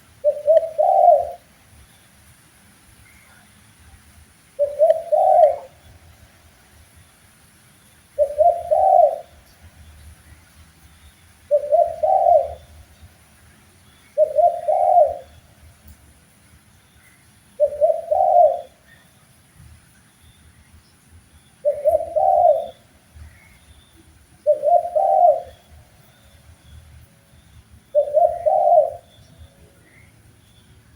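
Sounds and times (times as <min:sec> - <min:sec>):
dove cooing: 0:00.2 - 0:01.5, 0:04.6 - 0:05.8, 0:08.2 - 0:09.5, 0:11.5 - 0:12.9, 0:14.2 - 0:15.4, 0:17.6 - 0:19.0, 0:21.6 - 0:23.4, 0:24.4 - 0:25.8, 0:27.9 - 0:30.1.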